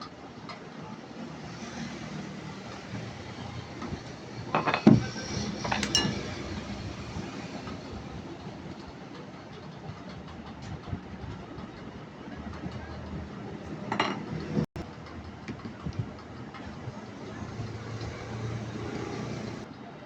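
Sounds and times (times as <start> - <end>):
hard objects clinking and knocking: 4.5 - 6.6.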